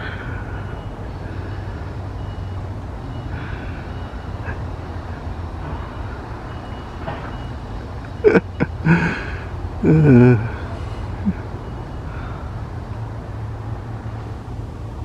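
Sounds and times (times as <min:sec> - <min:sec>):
motor vehicle rumble: 0:00.0 - 0:15.0
faint high beeps: 0:00.5 - 0:08.9.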